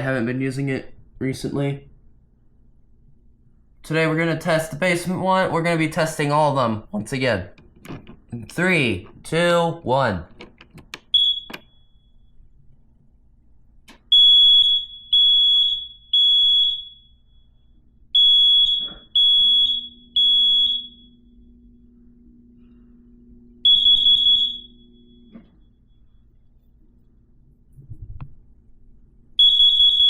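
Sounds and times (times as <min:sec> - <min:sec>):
smoke alarm beeping: 0:11.0 - 0:12.4, 0:14.0 - 0:26.7, 0:29.4 - 0:30.0
smoke alarm short chirps: 0:11.2 - 0:12.3.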